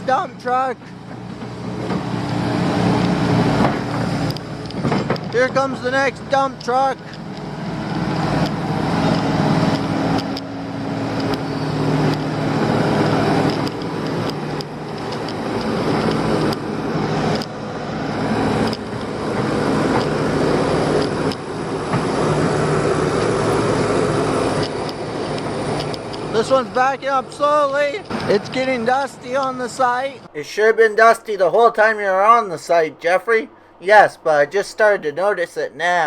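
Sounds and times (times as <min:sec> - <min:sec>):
heavy diesel machinery running: 0:00.0 - 0:28.8
dump truck pulling in: 0:00.0 - 0:30.6.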